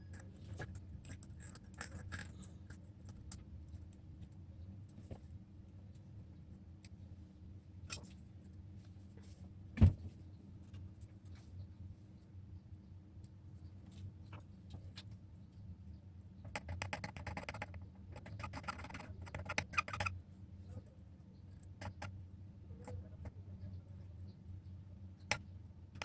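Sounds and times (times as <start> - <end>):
steady low hum: 0.0 - 16.6, 17.2 - 26.0.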